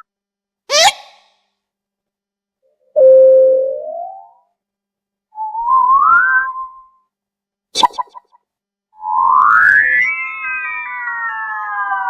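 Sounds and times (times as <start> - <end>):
cartoon whistle sliding upward: 5.4 - 6.9, 9.0 - 12.0
cartoon wavering tone: 7.8 - 8.3, 9.0 - 12.0.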